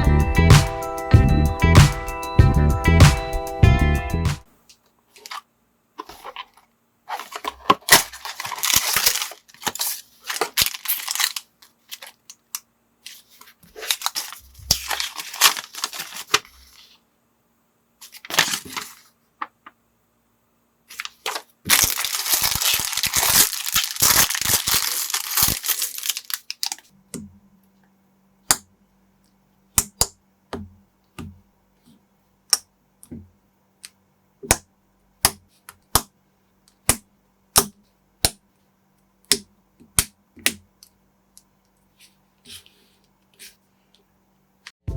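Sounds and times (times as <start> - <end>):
plastic packaging crinkling: 6.0 - 16.9, 18.0 - 19.1, 20.9 - 26.9.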